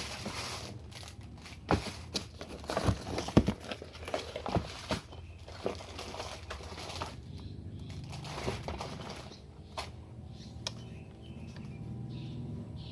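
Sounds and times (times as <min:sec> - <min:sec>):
packaging rustling and crinkling: 0:00.0 - 0:07.3, 0:07.9 - 0:10.0.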